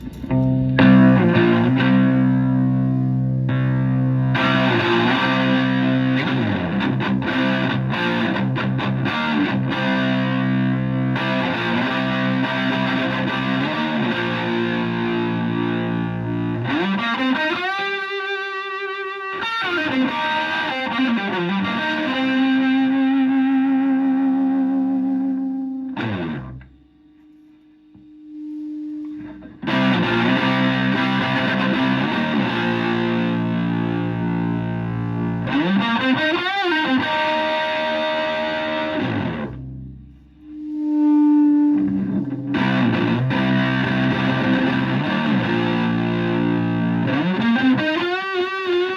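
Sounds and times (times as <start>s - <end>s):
overdriven electric guitar: 0.0s - 26.8s, 29.1s - 40.0s, 41.6s - 48.9s.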